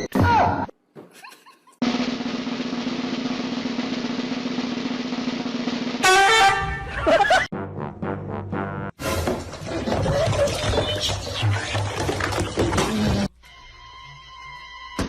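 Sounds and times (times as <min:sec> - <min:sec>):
snare drum roll: 0:01.8 - 0:06.5.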